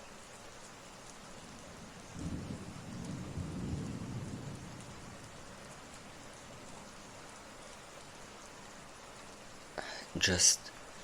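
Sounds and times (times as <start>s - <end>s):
steady rain: 0.0s - 11.0s
low rumble of thunder: 1.4s - 7.4s.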